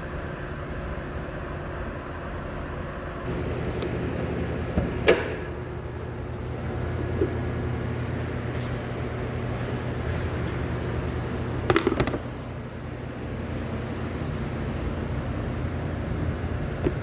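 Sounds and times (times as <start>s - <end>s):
sharp clicks: 11.7s - 12.2s.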